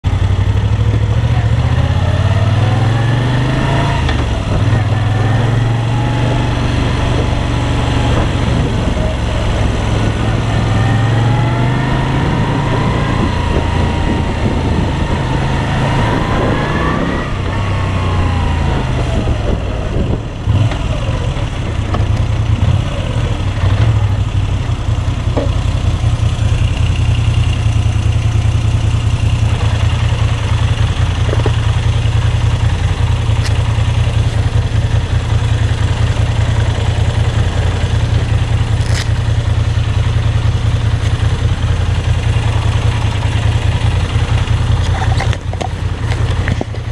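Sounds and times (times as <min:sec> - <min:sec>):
motorcycle engine idling: 0:00.1 - 0:01.8, 0:18.1 - 0:46.9.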